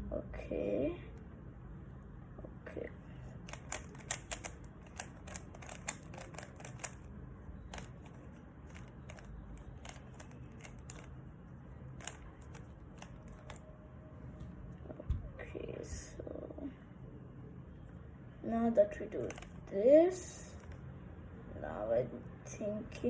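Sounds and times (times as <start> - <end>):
puzzle cube clicking turns: 3.4 - 11.3, 11.9 - 13.6, 19.2 - 19.7.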